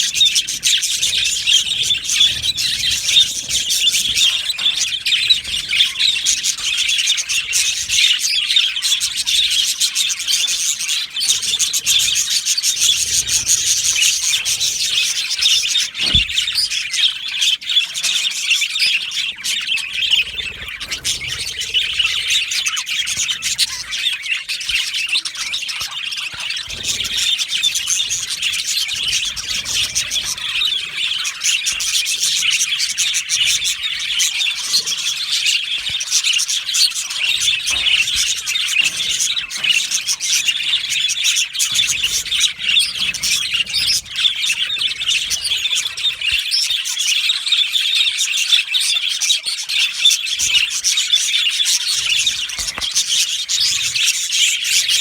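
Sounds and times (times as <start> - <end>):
budgerigars chattering: 0.0 - 55.0.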